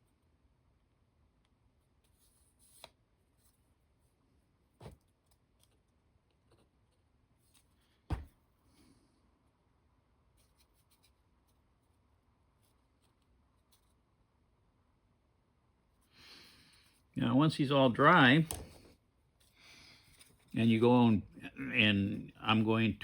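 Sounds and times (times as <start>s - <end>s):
faint handling noises: 16.7s - 22.9s.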